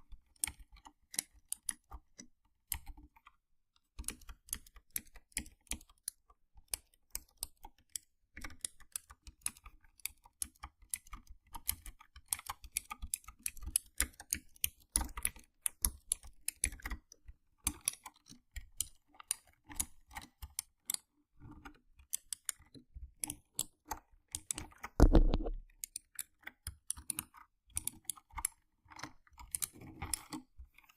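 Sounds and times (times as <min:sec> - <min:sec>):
mechanical keyboard typing: 0:23.2 - 0:28.4
deep thump: 0:25.0 - 0:25.6.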